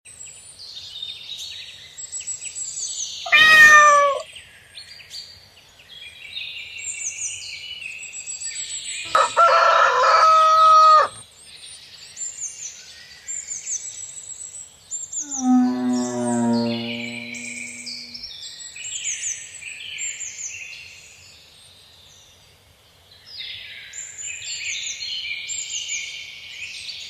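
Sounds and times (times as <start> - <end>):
rooster crowing: 3.3 - 4.2, 9.1 - 11.2, 15.3 - 18.1.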